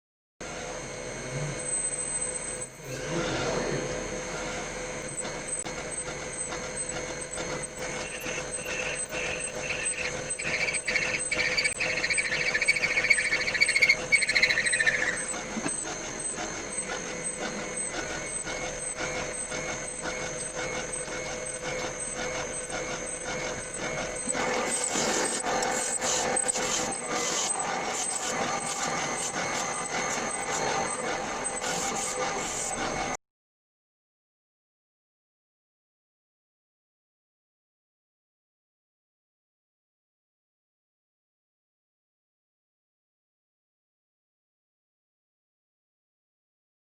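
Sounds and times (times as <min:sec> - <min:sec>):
milling machine whine: 0:00.4 - 0:33.2
drill squealing: 0:01.5 - 0:33.2.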